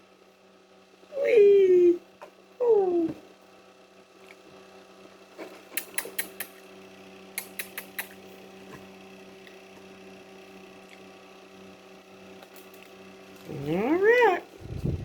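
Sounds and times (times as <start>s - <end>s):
steady hum: 0.0s - 15.0s
bird beak clicking: 5.7s - 6.6s, 7.3s - 8.2s.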